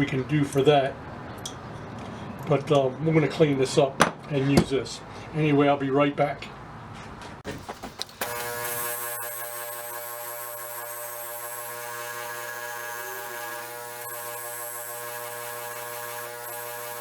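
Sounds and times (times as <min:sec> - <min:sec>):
polishing wheel motor humming: 0:07.7 - 0:17.0.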